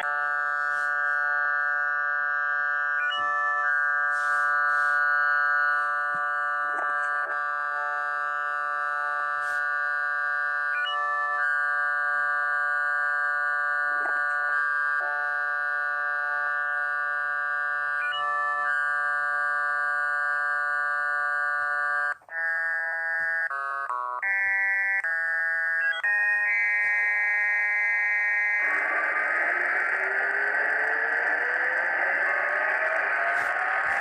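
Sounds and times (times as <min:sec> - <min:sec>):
synthesizer chords: 0:25.3 - 0:34.0.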